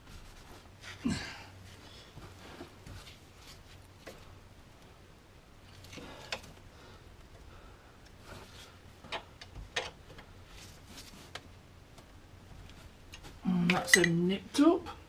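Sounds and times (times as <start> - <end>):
metal tool clanking: 13.7 - 14.2.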